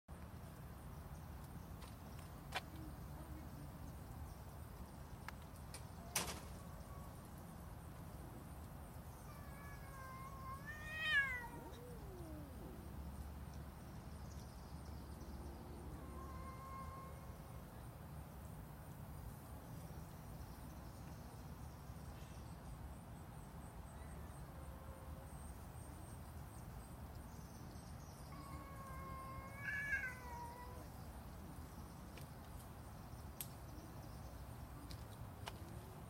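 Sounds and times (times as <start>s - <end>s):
cat meowing: 9.3s - 12.8s, 16.0s - 17.4s, 28.3s - 30.9s.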